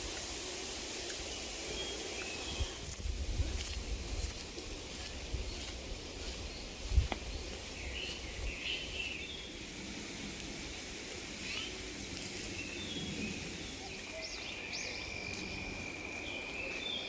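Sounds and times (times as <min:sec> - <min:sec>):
outdoor ambience hiss: 0:00.0 - 0:17.0
birds chirping: 0:04.7 - 0:09.7, 0:11.3 - 0:17.0.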